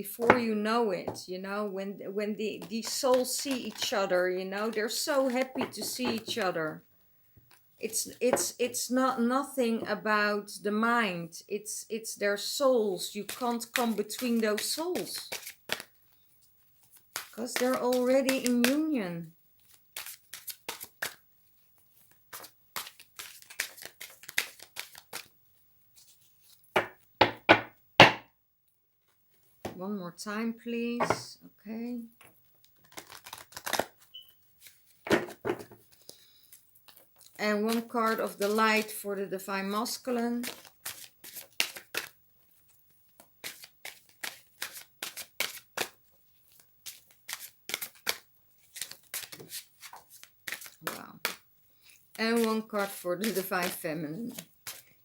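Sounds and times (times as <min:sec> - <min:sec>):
cards being shuffled: 0:02.6 - 0:04.0, 0:04.6 - 0:06.5, 0:08.0 - 0:08.6, 0:13.2 - 0:16.1, 0:16.7 - 0:18.9, 0:19.6 - 0:25.3, 0:31.0 - 0:31.2, 0:32.2 - 0:39.0, 0:39.7 - 0:55.0
cards snapping: 0:17.1 - 0:18.8, 0:19.7 - 0:21.2, 0:22.3 - 0:25.3, 0:32.7 - 0:34.0, 0:40.4 - 0:42.2, 0:43.4 - 0:46.0, 0:46.9 - 0:51.4, 0:52.4 - 0:54.8.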